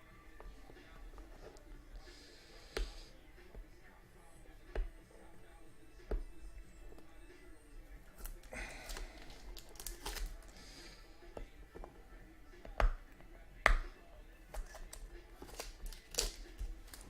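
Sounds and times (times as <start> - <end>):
wrapper rustling and tearing: 8.2 - 10.5, 15.4 - 17.0.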